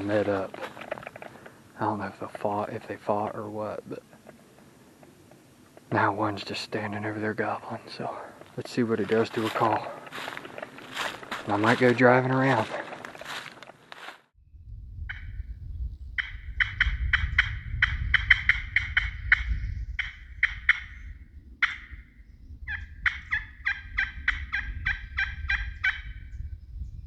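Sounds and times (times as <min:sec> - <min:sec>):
turkey call yelps: 0:16.2 - 0:22.0, 0:22.7 - 0:26.2.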